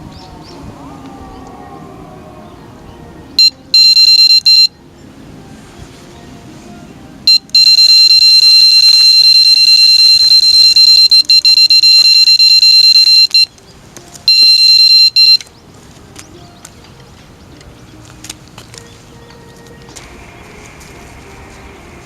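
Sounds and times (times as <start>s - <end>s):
high-pitched electronic beeper tone: 3.4s - 4.7s, 7.3s - 13.5s, 14.3s - 15.4s.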